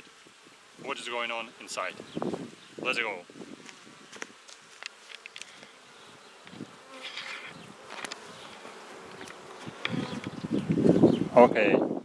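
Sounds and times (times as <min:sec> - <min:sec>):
honeybees buzzing: 0:00.0 - 0:11.5
knocks and clicks of hive: 0:04.2 - 0:05.7, 0:06.4 - 0:11.0.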